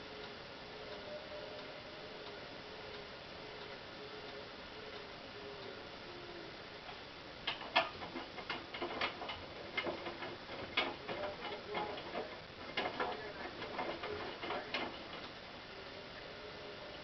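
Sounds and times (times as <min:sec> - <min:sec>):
washing machine clicks and taps: 0:07.4 - 0:15.2.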